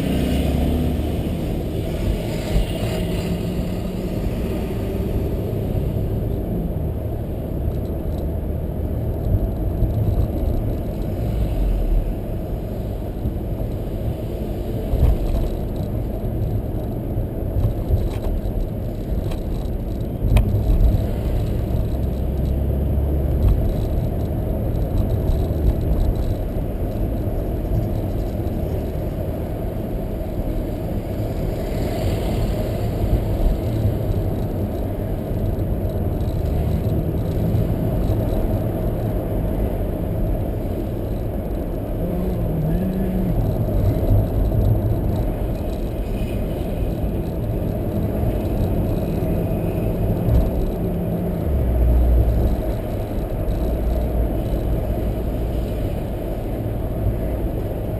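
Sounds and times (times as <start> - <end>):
car engine driving: 0.0 - 57.9
tyre road noise: 0.0 - 57.9.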